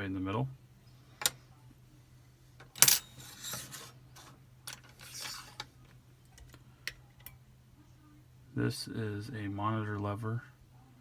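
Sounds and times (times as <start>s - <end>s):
metal parts clacking: 2.7s - 5.7s
metal parts scraping: 2.8s - 5.7s.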